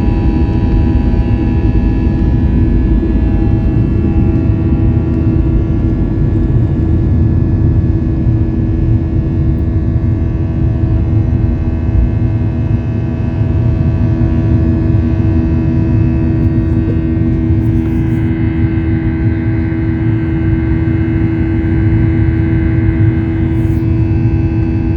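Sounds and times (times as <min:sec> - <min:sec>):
constant engine hum: 0:00.0 - 0:24.9
jet engines rumbling: 0:00.1 - 0:24.9.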